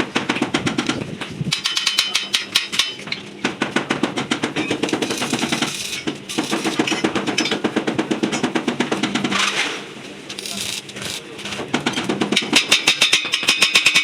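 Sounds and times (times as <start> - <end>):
fast drum beats: 3.4 - 9.6.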